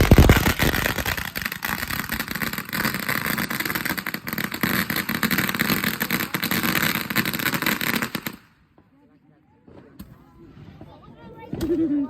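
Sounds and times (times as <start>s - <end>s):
firework hissing and crackling: 0.0s - 8.5s.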